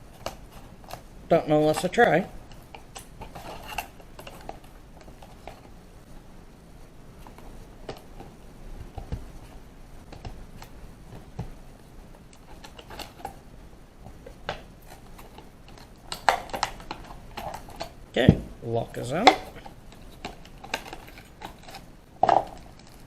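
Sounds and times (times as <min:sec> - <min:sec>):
lock packaging clicks and rattles: 0:12.3 - 0:13.4, 0:14.2 - 0:18.0, 0:19.0 - 0:23.0.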